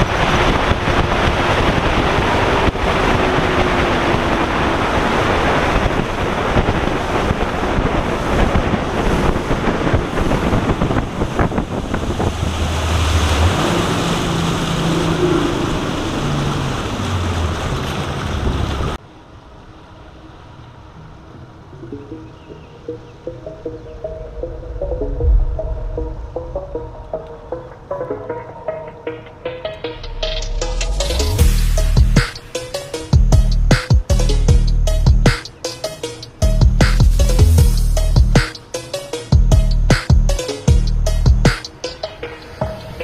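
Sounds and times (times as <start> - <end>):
wind noise on microphone: 0.0 - 19.0, 23.6 - 27.9
rushing water: 0.0 - 43.0.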